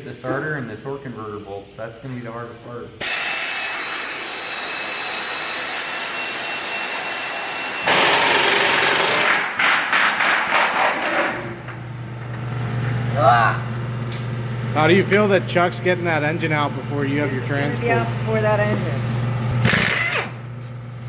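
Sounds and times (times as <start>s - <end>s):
pneumatic air tool hissing whine: 2.6s - 8.9s, 19.6s - 20.4s
air tool short bursts: 3.0s - 9.2s, 19.6s - 20.4s.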